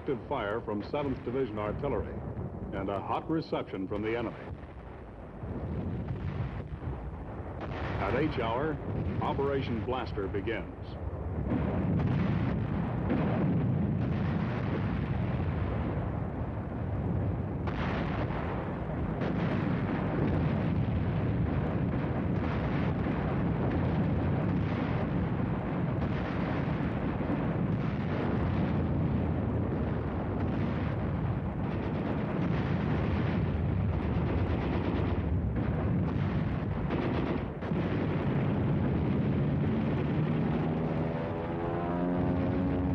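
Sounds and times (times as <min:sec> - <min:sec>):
sharp artillery reports: 0:00.0 - 0:05.0, 0:07.5 - 0:15.9
artillery barrage rumble: 0:00.0 - 0:42.9.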